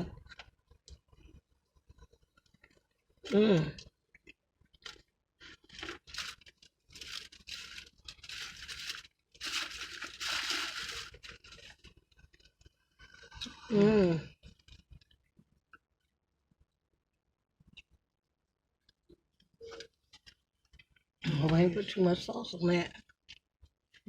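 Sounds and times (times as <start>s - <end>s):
crunching taco shell: 4.2s - 13.5s.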